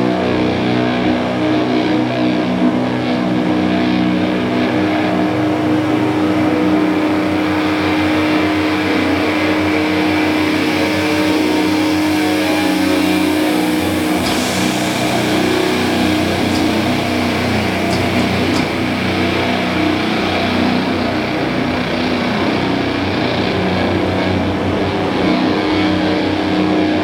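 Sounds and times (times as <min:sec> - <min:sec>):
distorted guitars and bass droning: 0:00.0 - 0:27.0
cymbal hits: 0:03.8 - 0:24.6.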